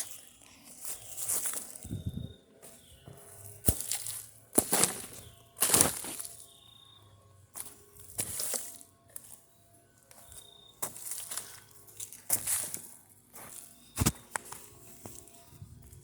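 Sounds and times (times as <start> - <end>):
rummaging rustling and scraping: 3.8 - 6.5.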